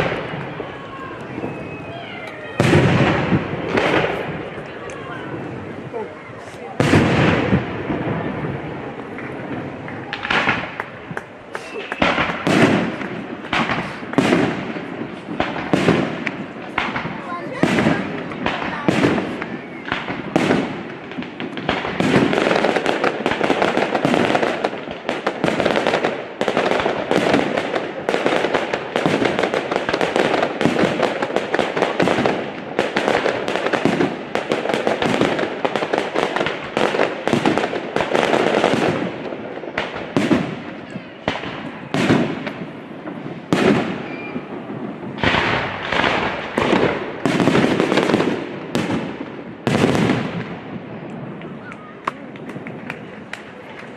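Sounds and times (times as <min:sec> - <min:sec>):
fireworks bangs and crackles: 0:00.0 - 0:53.9.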